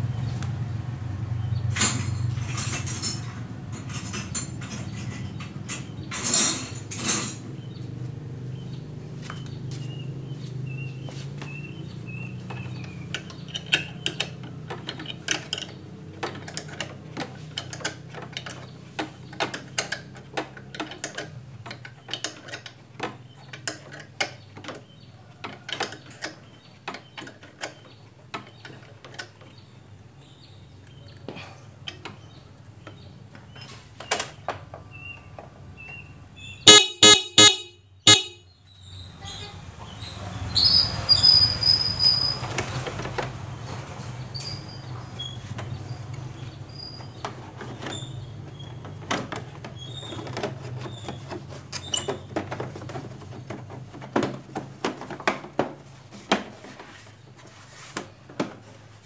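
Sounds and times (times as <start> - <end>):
clicks and knocks of hand work: 9.2 - 36.0, 42.4 - 59.0
scooter horn beeps: 36.5 - 38.6.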